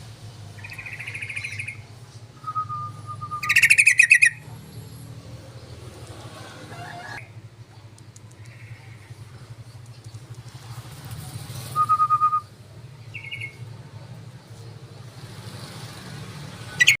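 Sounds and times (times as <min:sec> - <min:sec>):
bird trilling calls: 0:00.6 - 0:04.6, 0:13.1 - 0:13.6, 0:16.7 - 0:17.0.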